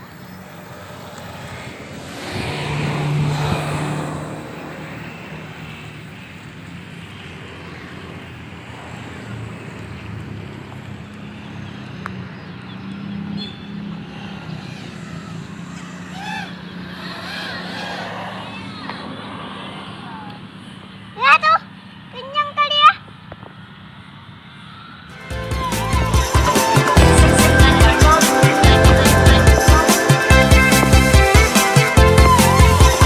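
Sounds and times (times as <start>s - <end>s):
model airplane propeller droning: 0.0s - 10.8s, 13.9s - 28.2s.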